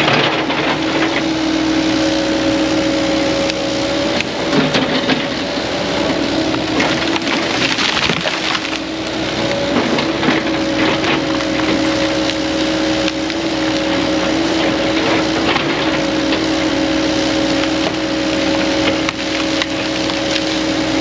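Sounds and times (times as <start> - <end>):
land-clearing machine whining: 0.0 - 21.0
wood cracking and splintering: 6.4 - 12.4, 18.9 - 20.8.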